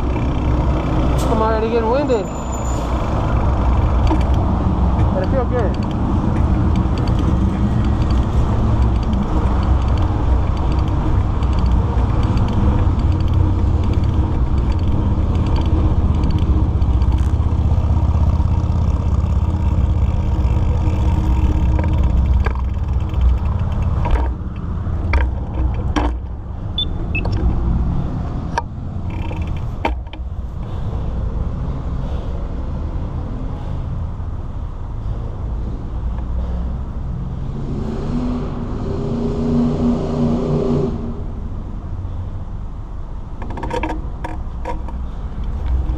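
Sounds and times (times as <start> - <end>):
bicycle clicks and rattles: 0.0 - 1.4, 3.0 - 26.4, 28.5 - 30.8, 43.3 - 45.9
wind rumbling on microphone: 0.0 - 33.5
bicycle road noise: 0.0 - 45.9.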